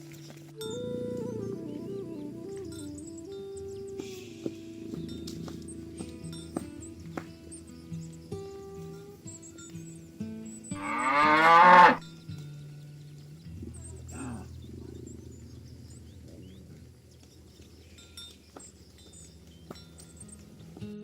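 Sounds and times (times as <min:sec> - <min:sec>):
cow mooing: 0:10.8 - 0:12.0.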